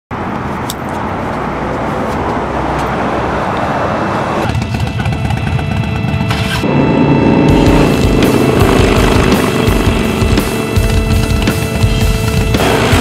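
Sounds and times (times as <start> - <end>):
road traffic rushing: 0.1 - 13.0
music with held tones: 5.1 - 13.0.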